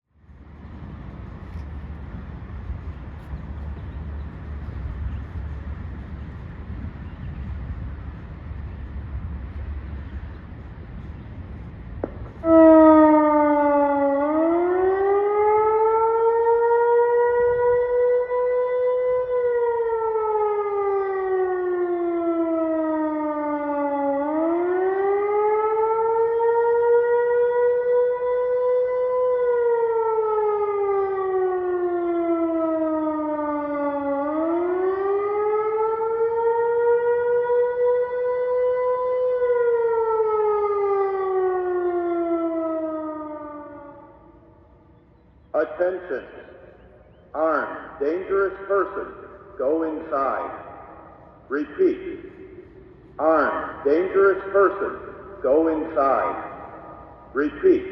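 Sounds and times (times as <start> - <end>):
electronic siren wail: 12.0 - 51.4, 52.0 - 57.9.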